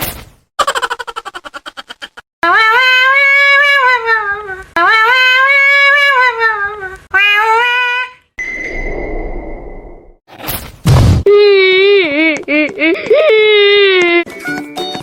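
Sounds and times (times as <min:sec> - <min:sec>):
high-pitched cartoon voice wailing: 0:02.4 - 0:08.2.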